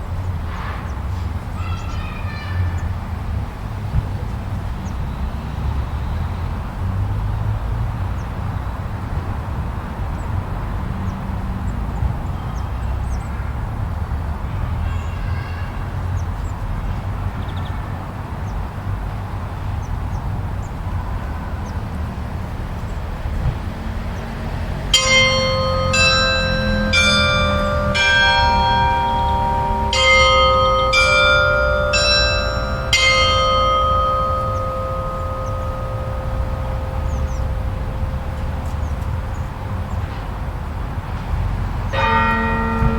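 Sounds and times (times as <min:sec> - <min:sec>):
low rumble of storm wind: 0:18.0 - 0:42.9
bell-like chime tones: 0:25.0 - 0:39.8.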